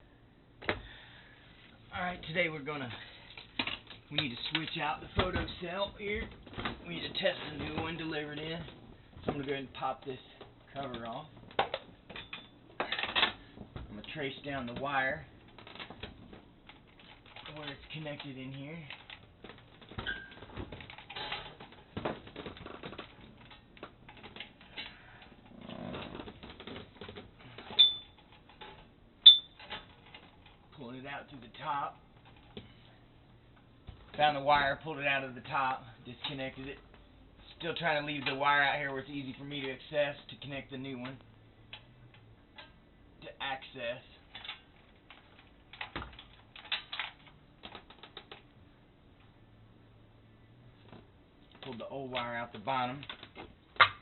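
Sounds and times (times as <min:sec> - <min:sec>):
wire and plastic rustling: 0:01.6 - 0:29.0, 0:29.6 - 0:33.0, 0:44.2 - 0:48.6
light clicks and rattles: 0:02.0 - 0:29.0, 0:29.6 - 0:33.0.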